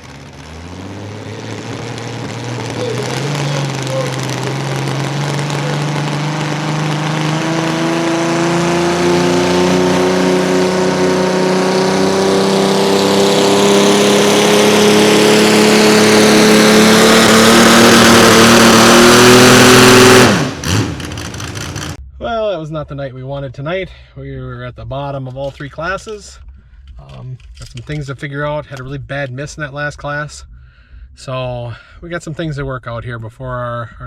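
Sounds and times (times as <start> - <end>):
tractor engine at full power: 0.0 - 22.0.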